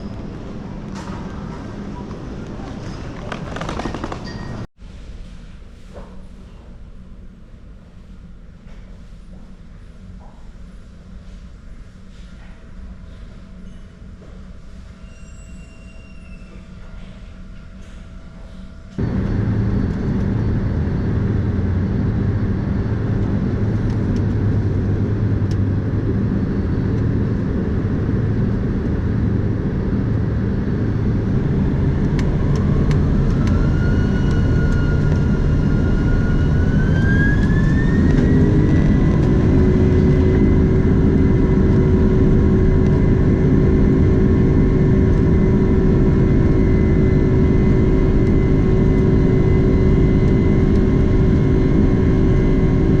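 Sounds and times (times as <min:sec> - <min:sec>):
airliner cabin rumble: 0:00.0 - 0:04.8, 0:16.5 - 0:53.0
jet engines whining: 0:19.0 - 0:53.0.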